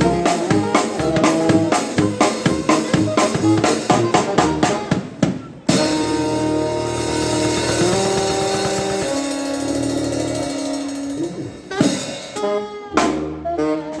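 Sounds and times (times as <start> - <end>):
live band playing chords: 0.0 - 14.0
loud drum hits: 5.0 - 12.4.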